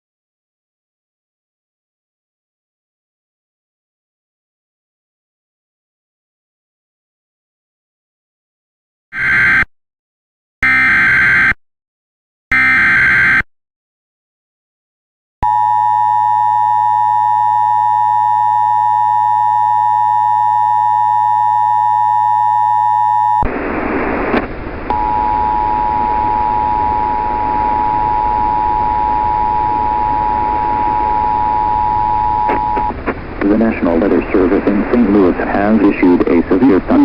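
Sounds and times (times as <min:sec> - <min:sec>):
two-tone alarm: 0:09.1 - 0:09.7, 0:10.6 - 0:11.6, 0:12.5 - 0:13.5, 0:15.4 - 0:23.5, 0:24.9 - 0:32.9
steady tone: 0:15.4 - 0:37.0
radio static: 0:22.6 - 0:37.0.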